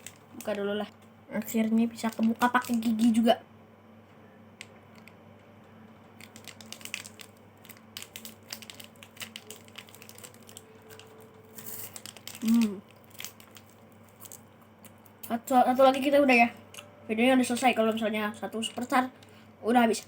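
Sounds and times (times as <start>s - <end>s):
crunchy wafer crunching: 6.2s - 15.3s.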